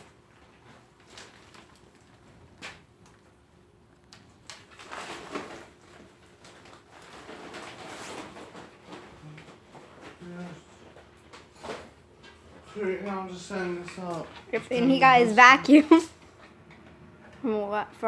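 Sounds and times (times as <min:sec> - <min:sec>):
scraping and rustling: 0:04.5 - 0:12.8.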